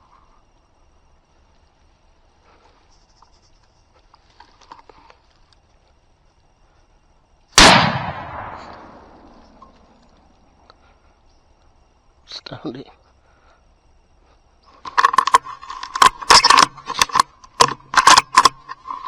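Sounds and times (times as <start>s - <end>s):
faint clicks and rustles: 0.0s - 7.5s, 13.0s - 19.0s
rifle shot with echo: 7.6s - 9.6s.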